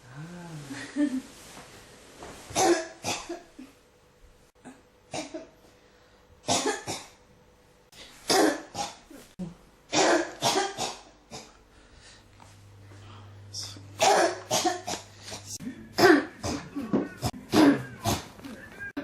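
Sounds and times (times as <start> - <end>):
person coughing: 2.6 - 3.8, 6.5 - 7.2, 8.3 - 9.3, 9.9 - 11.6, 13.6 - 18.3.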